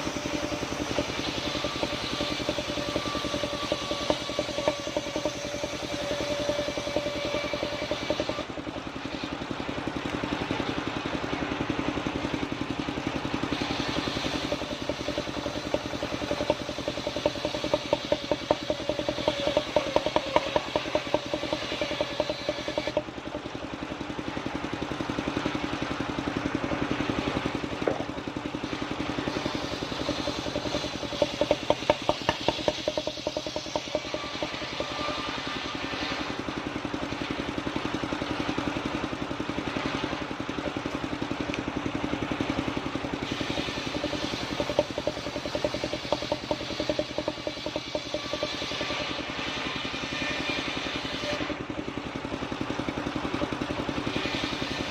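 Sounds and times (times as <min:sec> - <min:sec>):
rapid ticking: 0:00.0 - 0:08.5, 0:13.9 - 0:23.6, 0:29.2 - 0:35.6, 0:43.5 - 0:49.5
circular saw blade cutting timber: 0:00.0 - 0:54.9.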